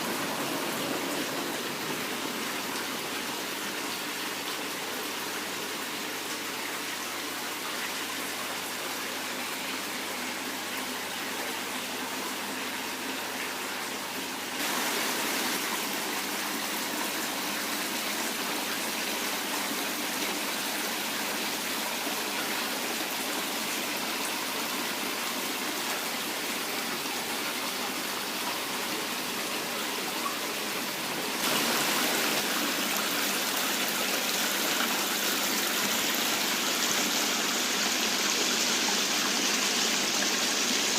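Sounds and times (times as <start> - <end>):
water splashing down waterfall: 0.0 - 40.9.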